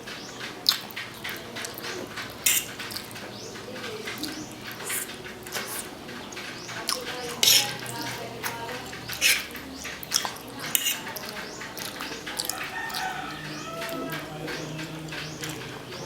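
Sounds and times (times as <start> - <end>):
chewing and mouth sounds: 0.4 - 16.0
cutlery clinking on a plate: 0.6 - 16.0.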